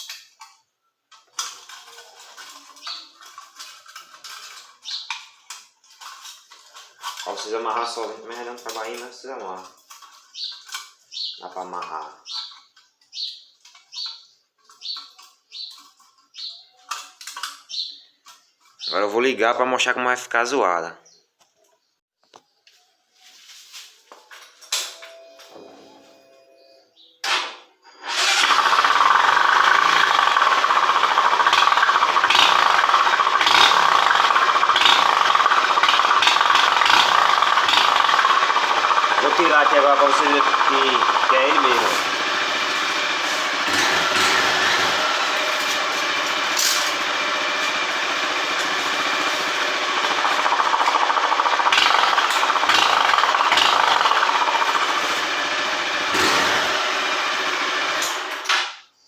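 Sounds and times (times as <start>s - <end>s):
small motorcycle engine running: 1.4s - 5.1s, 28.0s - 58.5s
can piece buzzing and rattling: 28.1s - 58.5s.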